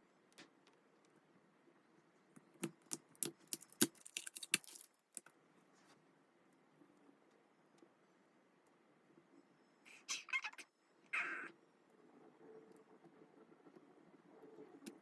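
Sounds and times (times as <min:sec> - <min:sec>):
packaging clicks and crinkles: 0:02.7 - 0:05.3.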